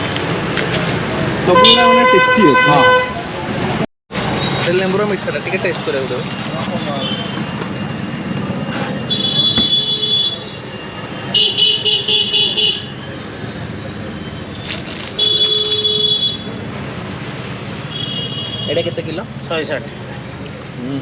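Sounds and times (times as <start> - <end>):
traffic noise: 0.0 - 21.0
vehicle horns honking: 1.5 - 3.8, 9.0 - 13.0, 15.2 - 16.6, 17.9 - 19.1.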